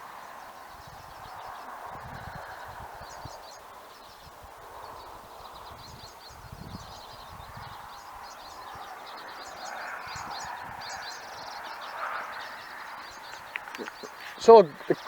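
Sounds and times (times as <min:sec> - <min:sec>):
small birds chirping: 0:00.0 - 0:15.0
outdoor hiss: 0:13.2 - 0:15.0.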